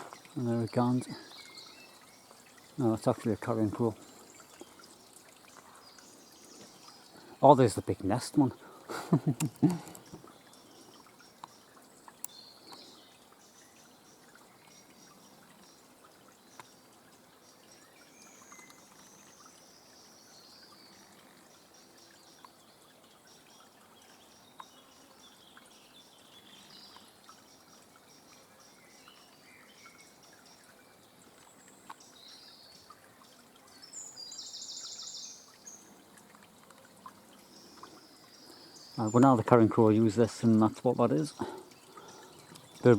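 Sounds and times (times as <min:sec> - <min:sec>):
soft steady hiss: 0:00.0 - 0:42.9
songbirds singing faintly: 0:00.0 - 0:42.9
faint clicks: 0:09.2 - 0:12.9, 0:16.5 - 0:17.2, 0:36.2 - 0:38.0, 0:41.4 - 0:42.9.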